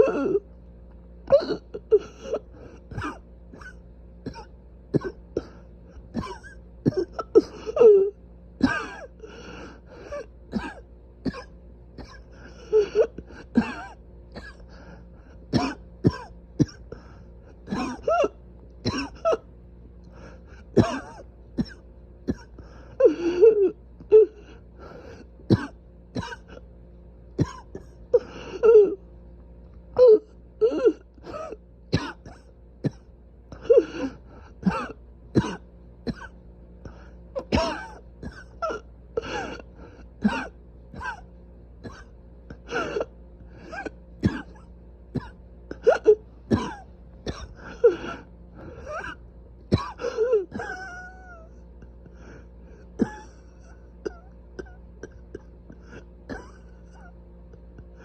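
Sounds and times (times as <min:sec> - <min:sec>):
person coughing: 0:00.0 - 0:00.4, 0:01.3 - 0:09.2, 0:10.1 - 0:14.7, 0:15.5 - 0:17.0, 0:17.6 - 0:19.4, 0:20.7 - 0:24.2, 0:25.5 - 0:26.6, 0:27.4 - 0:29.0, 0:30.6 - 0:52.3, 0:53.0 - 0:57.1
throat clearing: 0:01.3 - 0:07.6, 0:17.7 - 0:19.4, 0:25.5 - 0:26.6, 0:41.9 - 0:49.2, 0:53.0 - 0:57.1.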